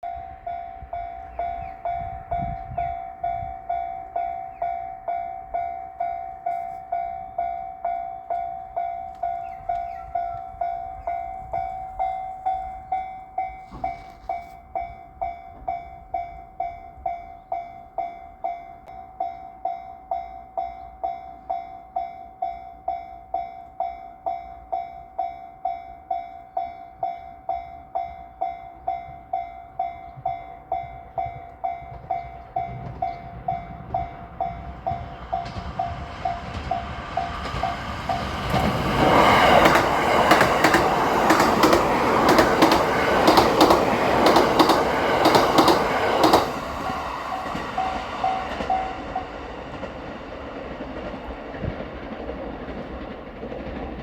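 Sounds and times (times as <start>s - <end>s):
railroad crossing bell ringing: 0.0s - 51.4s.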